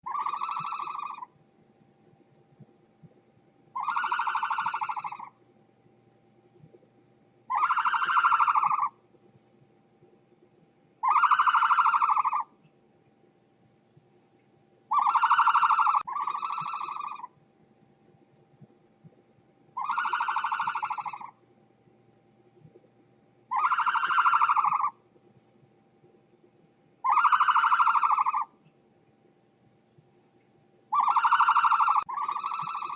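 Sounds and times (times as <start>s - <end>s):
ostrich calling: 0.0s - 1.4s, 3.7s - 5.4s, 7.5s - 9.0s, 11.0s - 12.6s, 14.9s - 17.4s, 19.8s - 21.4s, 23.5s - 25.0s, 27.0s - 28.6s, 30.9s - 32.9s
faint steady hum: 0.0s - 32.9s.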